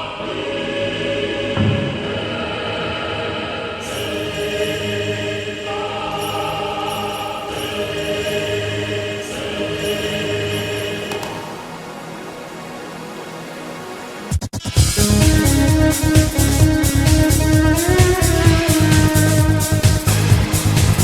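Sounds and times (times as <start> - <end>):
choir singing: 0.0 - 13.0
music with long held notes: 0.0 - 21.0.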